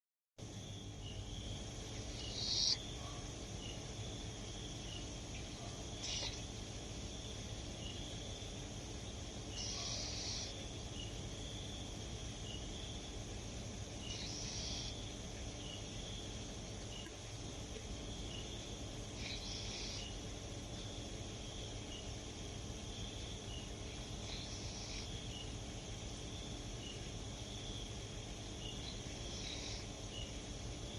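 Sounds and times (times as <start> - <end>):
high chirping: 2.0 - 2.9
dog snoring: 2.0 - 3.3, 5.6 - 6.6, 9.5 - 10.7, 14.0 - 15.2, 19.1 - 20.3, 23.9 - 25.5, 28.7 - 30.3.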